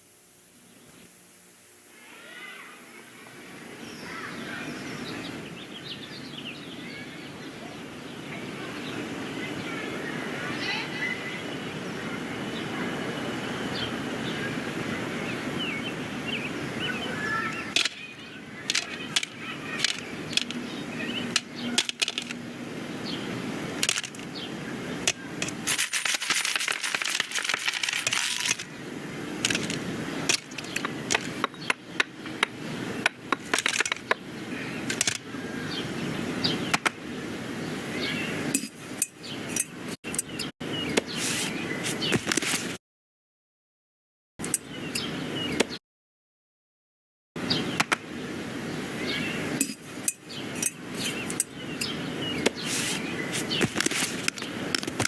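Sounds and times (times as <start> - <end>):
scattered clicks and knocks: 18.7 - 20.6, 21.3 - 22.4, 29.4 - 34.2, 34.9 - 35.2.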